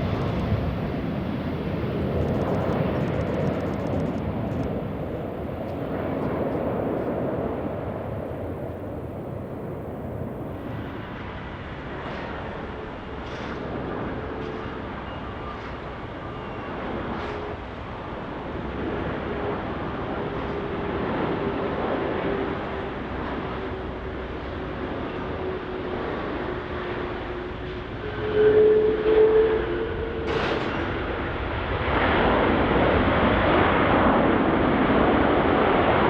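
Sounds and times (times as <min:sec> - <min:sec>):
jet engines running: 0:00.0 - 0:28.2, 0:29.8 - 0:36.0.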